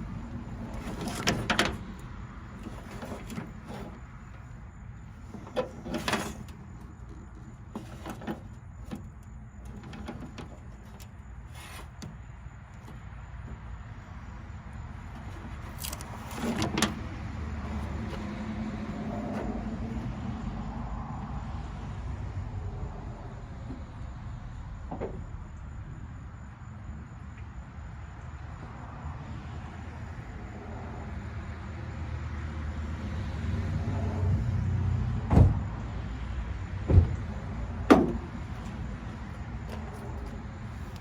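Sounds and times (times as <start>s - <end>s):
knocks and clatter: 0.4s - 12.2s, 36.9s - 41.0s.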